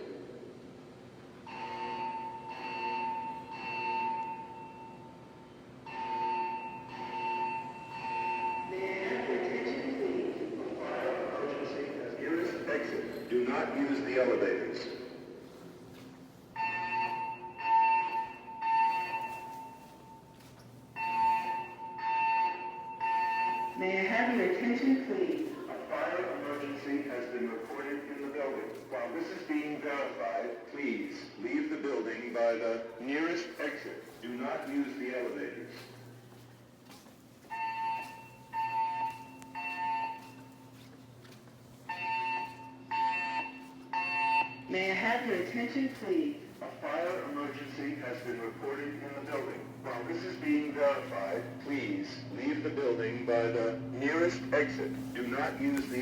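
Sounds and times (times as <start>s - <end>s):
fire alarm evacuation tone: 1.4s - 10.4s, 16.5s - 30.6s, 37.4s - 40.9s, 41.6s - 56.0s.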